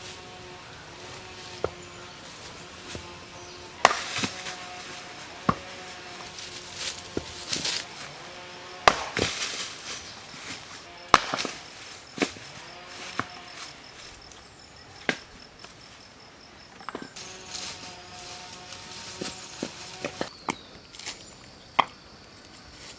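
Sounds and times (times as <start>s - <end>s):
blade chopping on wood: 3.8s - 4.6s, 5.4s - 7.9s, 8.8s - 9.6s, 11.1s - 12.5s.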